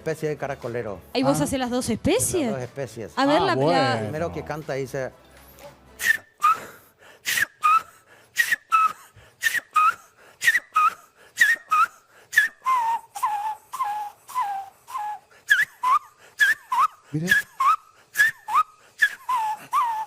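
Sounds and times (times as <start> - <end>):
man whistling bird call: 6.0 - 20.0.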